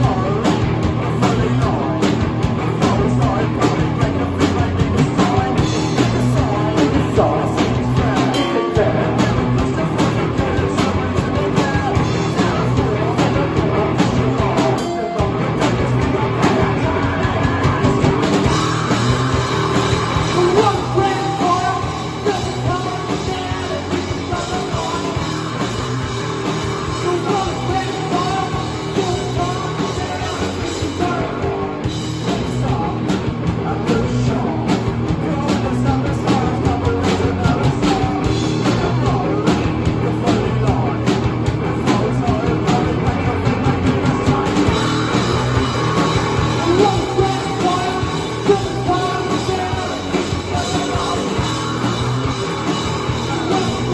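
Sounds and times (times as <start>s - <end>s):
person singing: 0.0s - 25.6s, 26.8s - 45.6s, 46.4s - 51.9s, 52.9s - 53.9s
live rock band playing: 0.0s - 53.9s.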